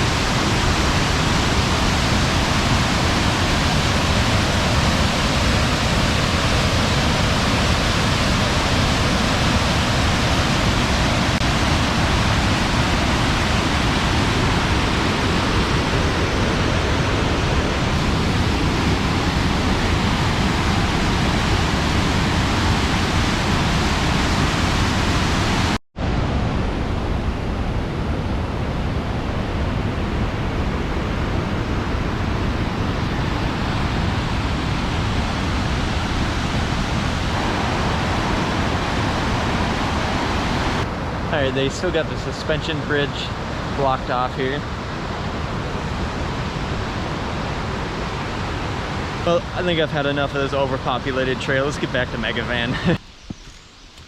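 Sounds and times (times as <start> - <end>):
waterfall rushing: 0.0 - 25.8, 29.0 - 53.0.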